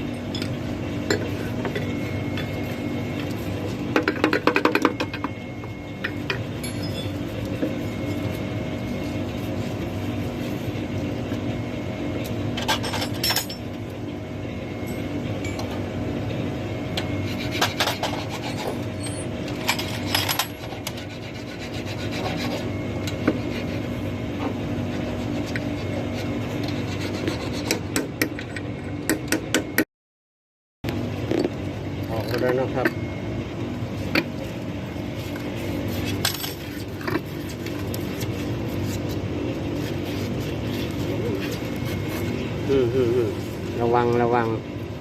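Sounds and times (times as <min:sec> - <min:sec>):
steady mechanical hum: 0:00.0 - 0:29.9, 0:30.8 - 0:45.0
hand tool scraping metal: 0:17.2 - 0:23.9.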